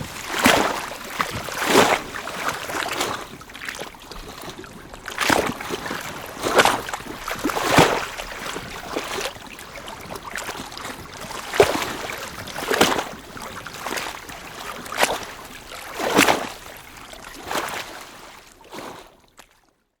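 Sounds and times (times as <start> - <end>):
lake waves lapping: 0.0 - 19.6.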